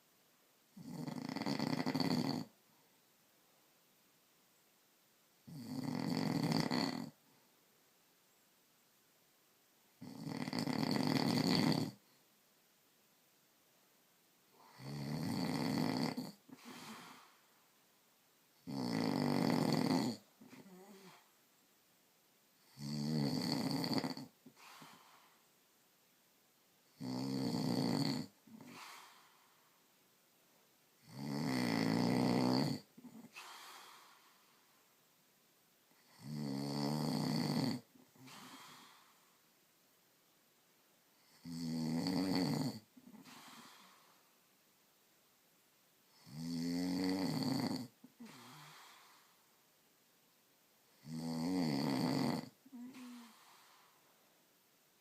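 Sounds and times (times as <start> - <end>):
man snoring: 0.8 - 2.5, 5.5 - 7.2, 10.0 - 12.0, 14.6 - 17.3, 18.6 - 21.2, 22.6 - 24.4, 26.9 - 29.2, 31.0 - 34.2, 36.0 - 39.1, 41.2 - 44.0, 46.1 - 49.2, 50.9 - 53.6
quiet breath: 14.0 - 18.7, 19.3 - 21.6, 22.5 - 25.8, 27.8 - 31.4, 32.2 - 35.2, 37.0 - 39.7, 42.2 - 44.8, 46.0 - 49.9, 50.8 - 55.0.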